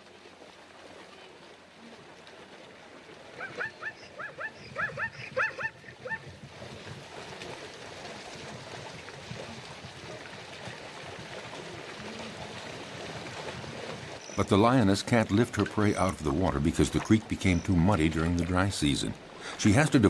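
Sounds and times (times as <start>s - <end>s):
animal yelping calls: 3.4s - 6.3s.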